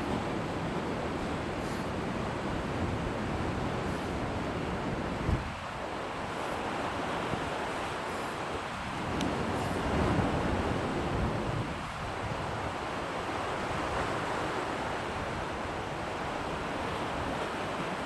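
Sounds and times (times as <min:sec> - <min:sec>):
wind buffeting microphone: 0:00.0 - 0:05.9, 0:08.6 - 0:12.8
sea: 0:00.0 - 0:18.0.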